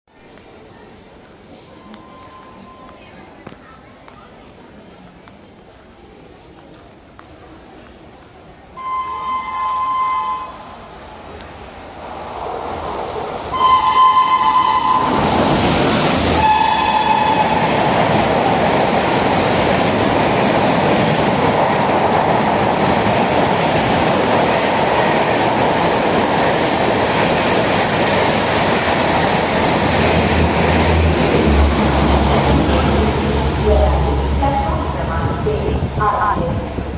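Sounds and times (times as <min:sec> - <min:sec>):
train passing wheel and rail noise: 0:00.1 - 0:36.9
shrill locomotive horn blasts: 0:08.8 - 0:10.7, 0:13.5 - 0:15.3, 0:16.4 - 0:17.7.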